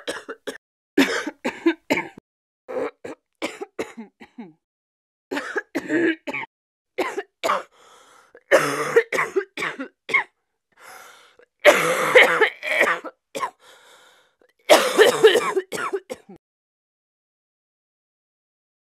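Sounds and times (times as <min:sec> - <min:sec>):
woman coughing: 0:00.0 - 0:04.6, 0:05.3 - 0:07.7, 0:08.5 - 0:10.3, 0:11.7 - 0:13.6, 0:14.7 - 0:16.4
faint breaths: 0:07.7 - 0:08.4, 0:10.8 - 0:11.4, 0:13.6 - 0:14.4.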